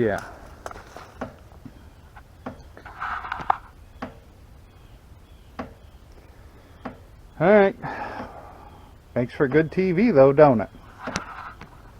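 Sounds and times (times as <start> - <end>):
twigs snapping: 0.0 - 1.8
footsteps through brush: 0.0 - 3.7
brush rustling: 0.0 - 4.3, 10.8 - 11.9.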